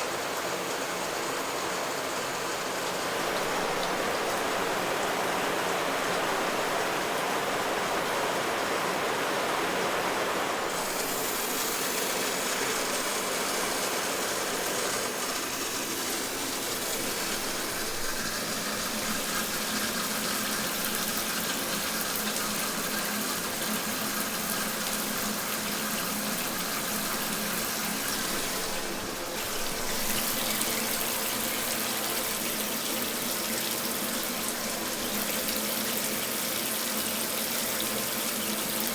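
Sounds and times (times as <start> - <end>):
shower water spraying: 0.0 - 38.9.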